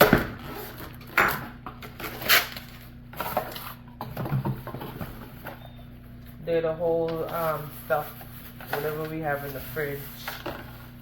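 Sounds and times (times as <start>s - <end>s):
plastic bins knocking and clattering: 0.0s - 2.0s, 3.2s - 5.6s.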